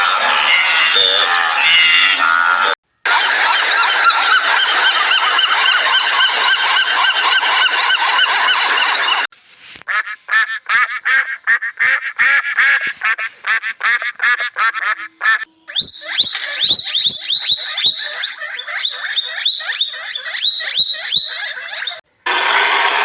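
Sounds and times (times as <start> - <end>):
birds calling rapidly: 3.1 - 9.3, 10.0 - 22.0.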